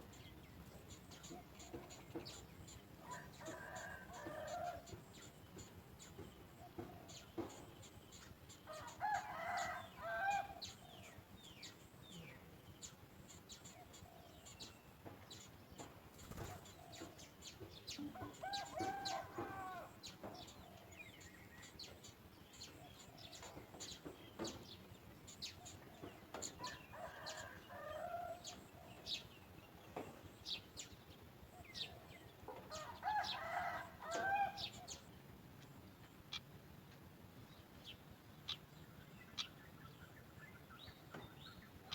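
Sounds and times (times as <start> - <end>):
small birds chirping: 0.0 - 41.9
rooster crowing: 8.7 - 10.5, 18.4 - 19.9, 32.7 - 34.6.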